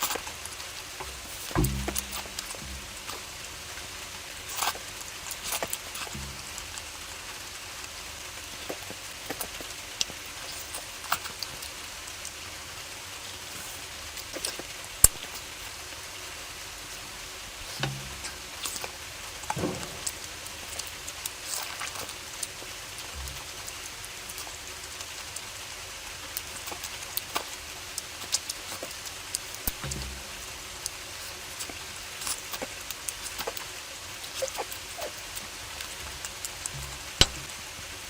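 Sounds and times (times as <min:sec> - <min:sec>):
person chewing food: 0:00.0 - 0:03.4, 0:04.4 - 0:06.8, 0:08.5 - 0:11.7, 0:13.5 - 0:15.8, 0:17.0 - 0:25.6, 0:26.3 - 0:37.5
steady hiss: 0:00.0 - 0:38.0
soft low thuds: 0:01.0 - 0:03.7, 0:29.7 - 0:30.8, 0:36.0 - 0:37.5.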